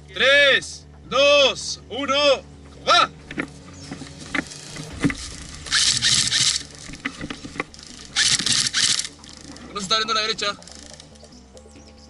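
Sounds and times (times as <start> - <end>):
gear rubbing against camera: 3.3 - 9.8
loud burst of rustling: 4.4 - 9.6.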